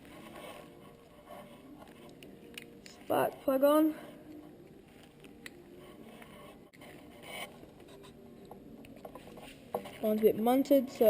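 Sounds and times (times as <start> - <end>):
small clicks and scrapes of hands: 0.0 - 3.1, 4.3 - 10.2.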